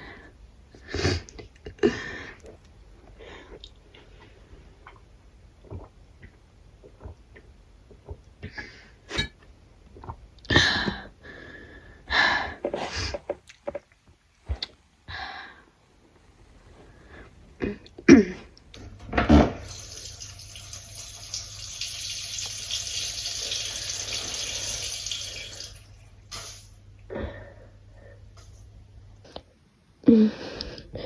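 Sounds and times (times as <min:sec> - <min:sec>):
person urinating: 0:18.8 - 0:26.6.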